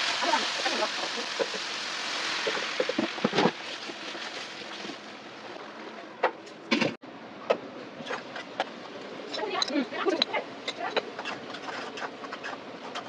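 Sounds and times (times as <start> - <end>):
water running and splashing: 0.0 - 5.5.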